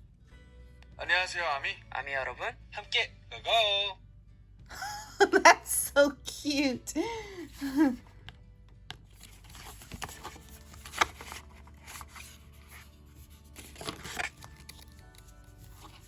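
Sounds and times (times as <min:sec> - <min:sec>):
faint background music: 0:00.0 - 0:16.0
paper crinkling and tearing: 0:09.2 - 0:16.0.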